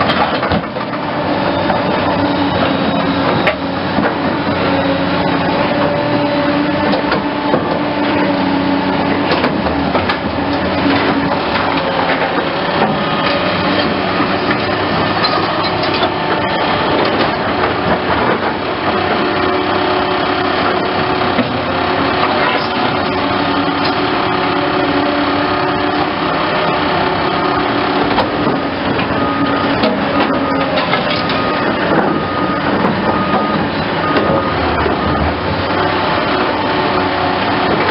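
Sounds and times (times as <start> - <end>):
knocks and clanks: 0.0 - 1.9, 6.8 - 8.1, 9.2 - 19.3, 28.1 - 35.4
excavator diesel engine: 0.0 - 37.9.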